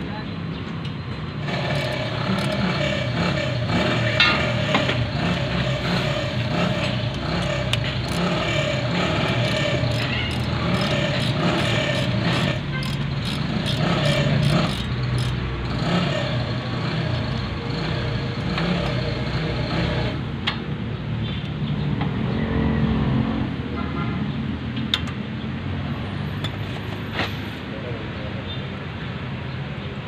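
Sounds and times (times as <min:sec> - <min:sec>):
vehicle engine rumbling: 0:00.0 - 0:23.6.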